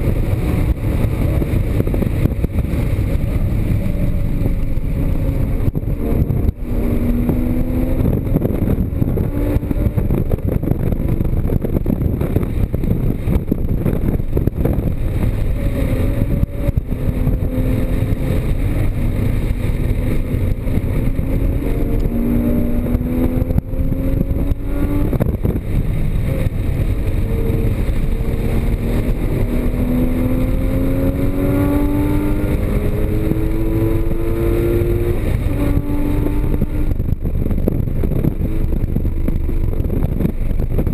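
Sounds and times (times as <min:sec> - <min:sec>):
car engine revving: 0:00.0 - 0:40.9
wind and road noise rumble: 0:00.0 - 0:40.9.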